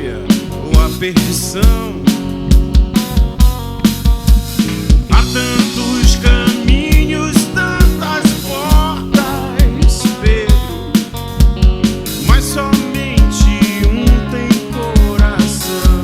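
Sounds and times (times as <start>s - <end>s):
live rock band playing: 0.0s - 16.0s
kick drum beat: 2.5s - 5.4s, 11.4s - 12.5s.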